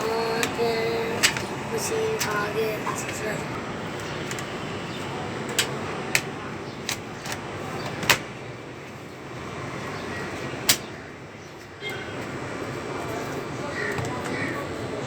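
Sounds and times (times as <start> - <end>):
plastic laptop parts clicking: 0.0 - 3.2, 3.9 - 8.3.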